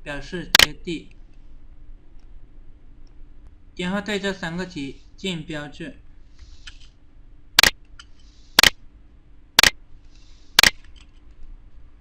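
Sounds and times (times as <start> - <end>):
sharp loud clicks: 7.6 - 7.8, 10.6 - 10.8.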